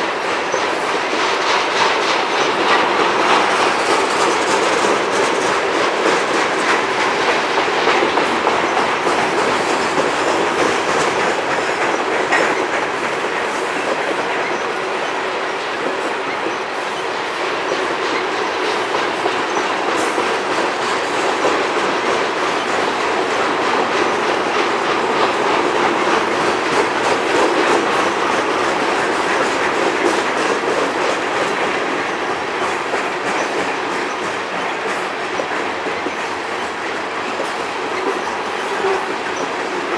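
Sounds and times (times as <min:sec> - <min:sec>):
freight train wheels clattering: 0:00.0 - 0:39.9.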